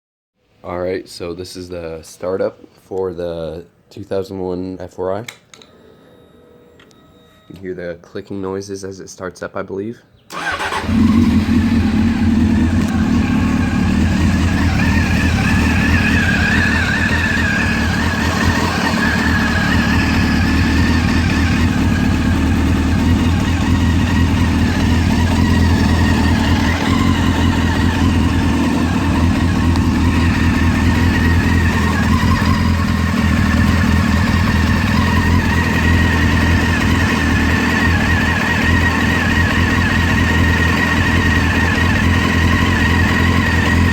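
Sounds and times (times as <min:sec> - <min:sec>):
motorcycle engine starting and idling: 0:10.3 - 0:43.9.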